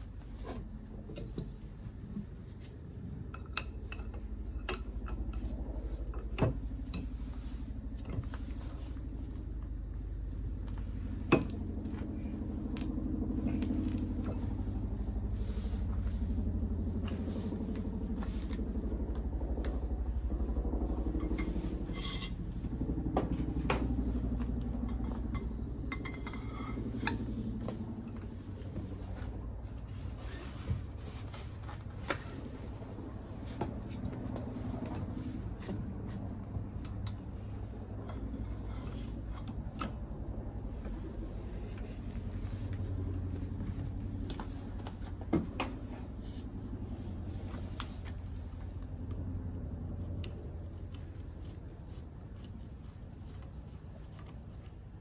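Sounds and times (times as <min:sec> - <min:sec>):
low rumble: 0:00.0 - 0:50.6.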